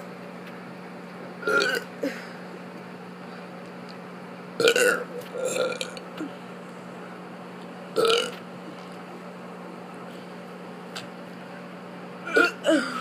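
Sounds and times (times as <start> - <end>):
child burping: 12.3 - 13.0.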